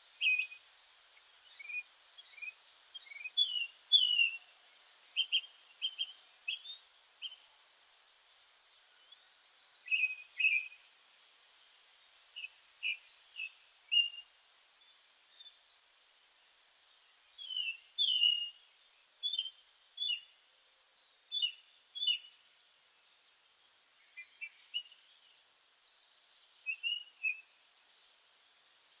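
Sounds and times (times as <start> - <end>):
faint hiss: 0.0 - 29.0
rapid bird trills: 1.5 - 4.4
short bird chirps: 1.5 - 4.4, 9.9 - 10.8, 12.3 - 14.4, 15.2 - 18.7.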